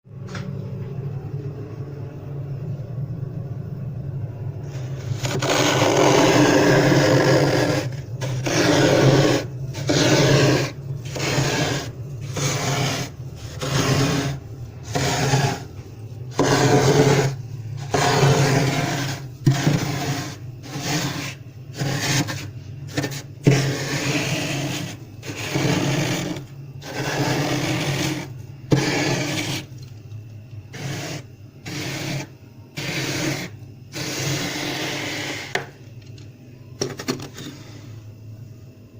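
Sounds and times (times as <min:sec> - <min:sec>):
steady low hum: 0:00.0 - 0:38.9
frost scraped off freezer wall: 0:04.6 - 0:29.9, 0:30.7 - 0:35.7.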